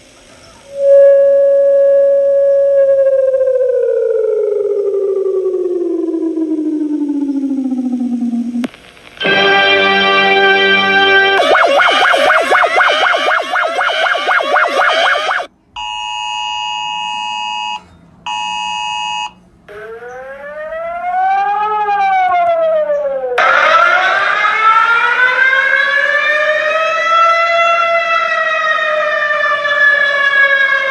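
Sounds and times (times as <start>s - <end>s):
civil defense siren winding up: 0.6s - 15.5s, 18.3s - 30.9s
rising sweep alarm: 0.7s - 8.6s, 9.2s - 15.9s, 17.6s - 30.9s
siren rising and falling: 0.7s - 15.5s, 19.7s - 30.9s
high multi-note alert tone: 9.3s - 15.5s.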